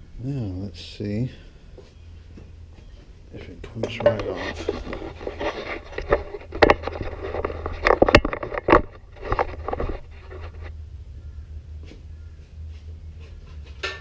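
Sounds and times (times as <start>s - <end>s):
metal clunks and scraping: 3.4s - 10.8s, 13.2s - 14.0s.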